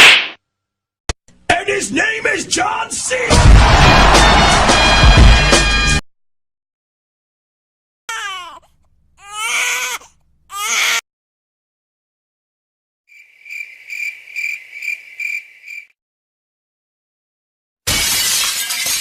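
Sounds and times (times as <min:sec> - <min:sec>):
baby crying: 0:08.1 - 0:11.0
cricket chirping: 0:13.1 - 0:15.9.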